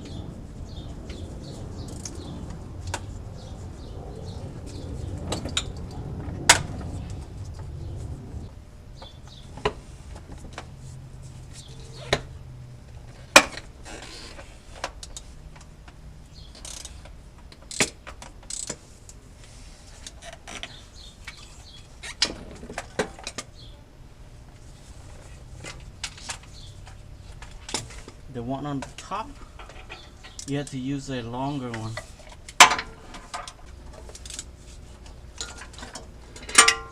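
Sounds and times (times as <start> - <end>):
low steady hum: 0.0 - 36.9
hand tools clinking on metal: 35.4 - 36.9.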